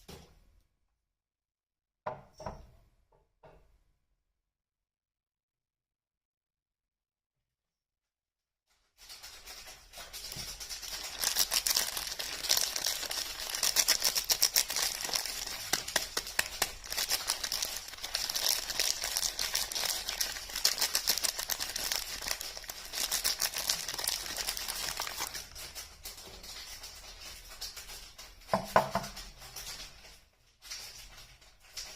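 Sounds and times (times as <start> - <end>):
packaging crinkling and tearing: 9.0 - 28.4, 29.1 - 31.9.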